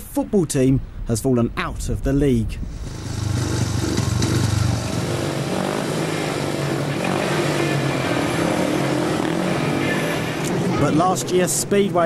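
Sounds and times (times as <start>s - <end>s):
motorcycle engines droning: 2.7s - 12.0s.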